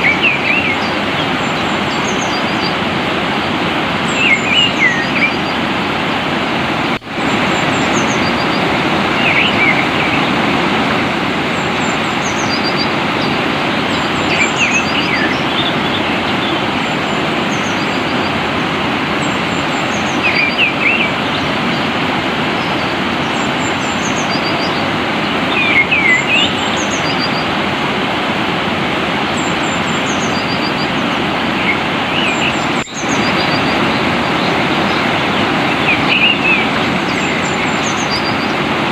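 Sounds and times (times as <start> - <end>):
small birds chirping: 0.0 - 27.6, 29.2 - 38.9
flowing water rushing: 0.0 - 38.9.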